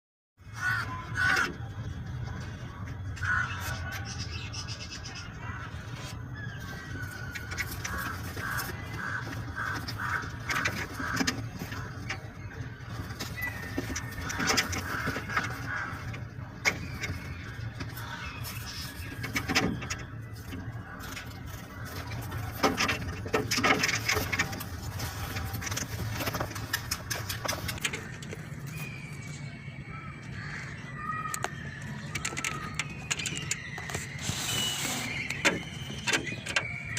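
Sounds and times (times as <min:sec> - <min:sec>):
birds calling: 0:00.4 - 0:36.9
sharp clicks: 0:31.3 - 0:36.9.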